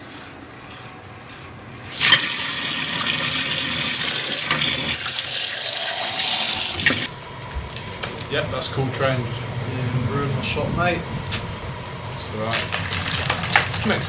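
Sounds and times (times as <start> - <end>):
kitchen tap running: 1.9 - 7.1.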